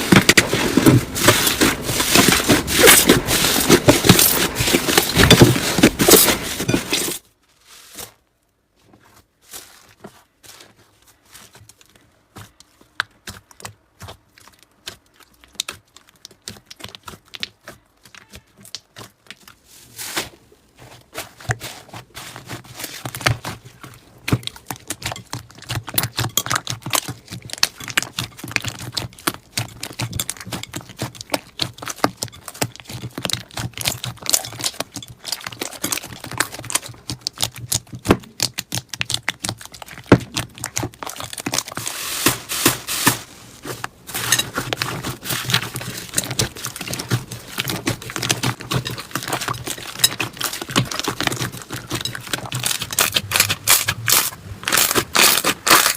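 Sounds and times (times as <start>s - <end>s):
slime crackling and popping: 24.2s - 55.9s.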